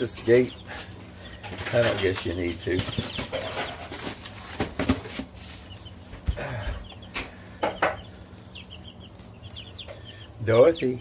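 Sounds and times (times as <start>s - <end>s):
knocks and rustles: 0.0s - 8.2s
chickens chirping: 0.0s - 11.0s
chickens clucking: 0.0s - 11.0s.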